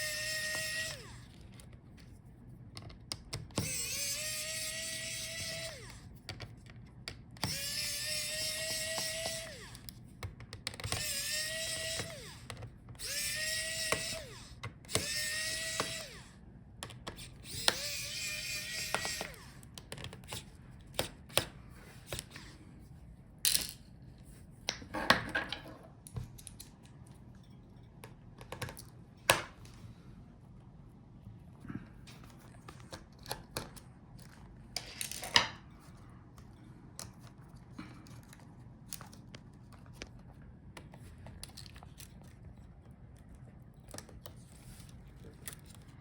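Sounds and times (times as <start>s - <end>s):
electric screwdriver whirring: 0.0s - 1.4s, 3.5s - 6.1s, 7.4s - 10.0s, 10.7s - 16.4s, 17.2s - 19.7s
small parts clicking and tapping: 2.7s - 21.5s.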